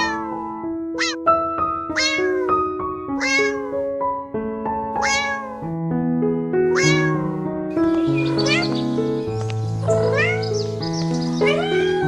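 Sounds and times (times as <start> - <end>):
cat meowing: 0.0 - 0.4, 1.0 - 1.3, 1.9 - 3.8, 5.0 - 5.6, 6.7 - 7.4, 8.1 - 8.8, 10.0 - 12.0
gentle background music: 0.0 - 12.0.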